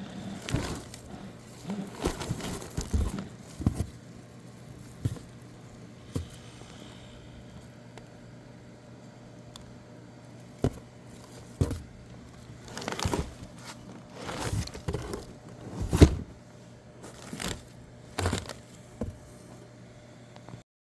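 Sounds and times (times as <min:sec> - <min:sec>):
rustling: 0:00.0 - 0:06.4, 0:10.6 - 0:16.4, 0:17.0 - 0:19.3
steady low hum: 0:00.0 - 0:20.6.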